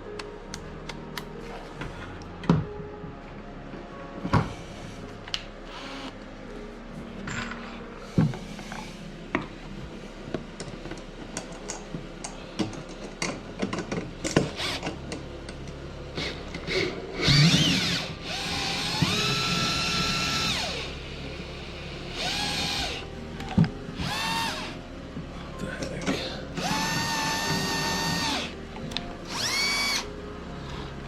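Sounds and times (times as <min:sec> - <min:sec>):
power drill driving a screw: 0:05.7 - 0:06.1, 0:14.5 - 0:14.9, 0:16.2 - 0:21.0, 0:22.1 - 0:23.0, 0:24.0 - 0:24.8, 0:26.6 - 0:28.6, 0:29.2 - 0:30.1.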